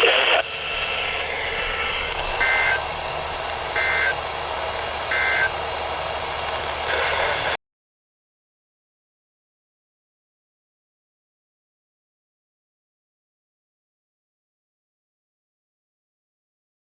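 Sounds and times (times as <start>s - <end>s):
static hiss: 0.0s - 7.6s
two-tone digital chirps: 0.4s - 4.2s.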